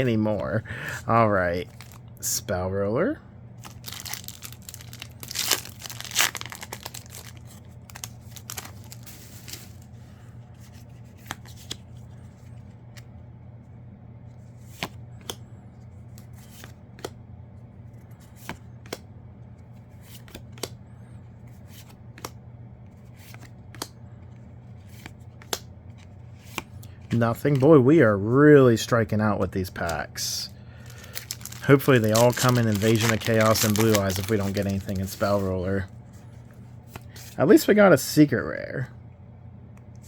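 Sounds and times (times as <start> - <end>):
foil pack tearing and crinkling: 3.6 - 9.8, 30.8 - 35.5.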